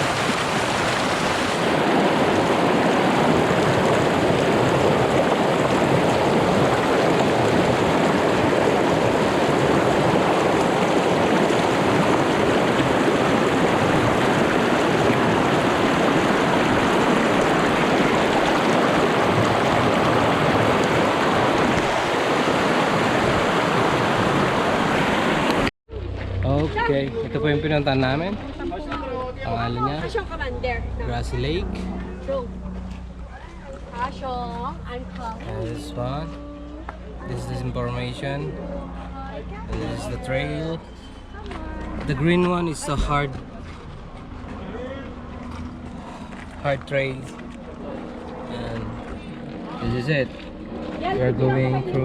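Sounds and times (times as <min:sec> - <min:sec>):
fast-flowing water rushing: 0:00.0 - 0:25.7.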